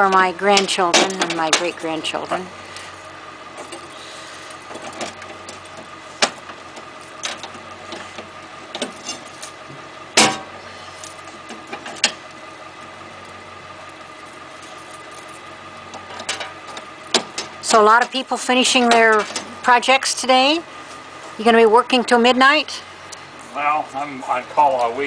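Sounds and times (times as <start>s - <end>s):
steady hum: 0.0s - 25.0s
sharp knocks: 10.2s - 10.5s.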